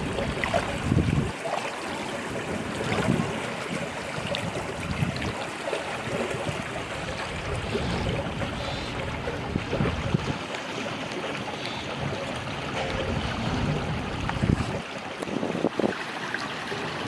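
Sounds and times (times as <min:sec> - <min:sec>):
wind on microphone: 0:00.0 - 0:01.4, 0:02.3 - 0:05.4, 0:06.0 - 0:10.5, 0:12.0 - 0:16.1
water washing: 0:00.0 - 0:17.0.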